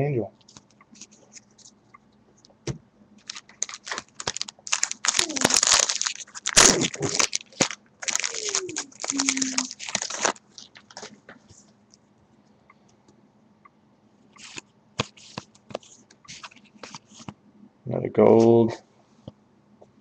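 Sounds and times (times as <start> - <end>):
foil wrapper tearing and crinkling: 3.2 - 11.1.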